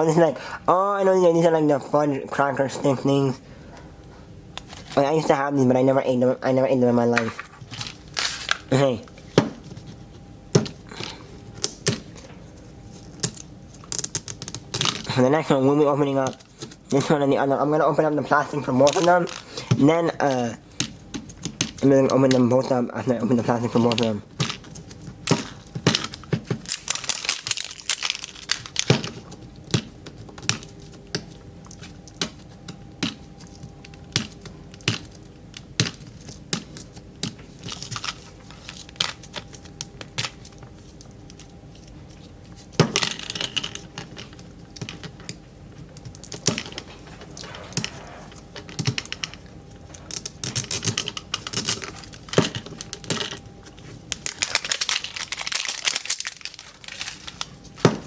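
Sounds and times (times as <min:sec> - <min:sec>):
plastic wrap tearing and crinkling: 0:23.6 - 0:31.0, 0:46.2 - 0:58.0.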